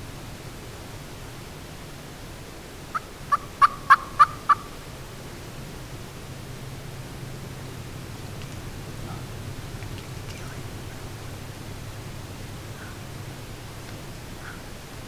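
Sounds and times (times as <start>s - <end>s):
turkey yelps: 2.9s - 4.9s.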